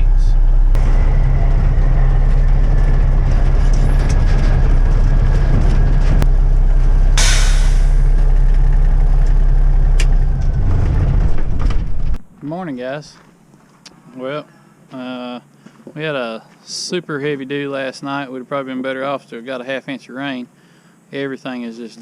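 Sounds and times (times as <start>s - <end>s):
truck engine running: 0.0s - 12.2s
air hiss burst: 7.2s - 8.1s.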